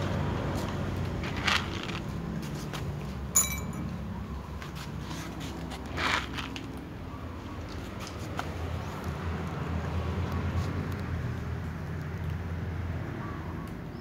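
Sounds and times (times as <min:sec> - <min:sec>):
metallic clink: 0:03.4 - 0:03.9.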